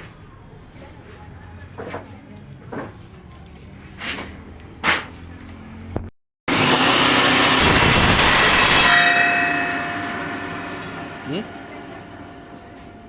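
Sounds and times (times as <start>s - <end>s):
saw cutting through plank: 6.5s - 11.4s
saw blade ringing whine: 6.5s - 13.0s.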